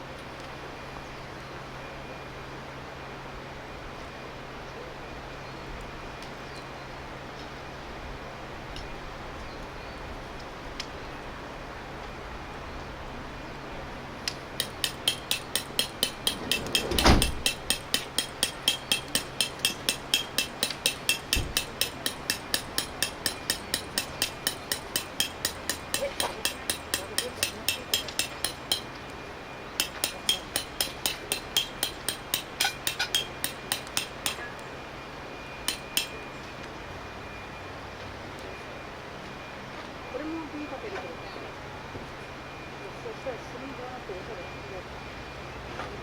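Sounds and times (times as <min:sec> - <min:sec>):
rapid light tapping: 0:14.3 - 0:29.0
heavy thump: 0:15.1 - 0:18.6, 0:21.3 - 0:21.7.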